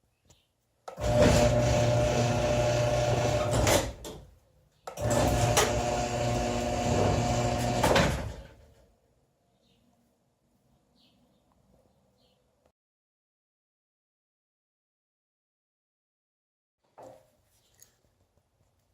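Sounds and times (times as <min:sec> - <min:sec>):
electric motor humming: 0:01.0 - 0:03.6, 0:05.0 - 0:08.0.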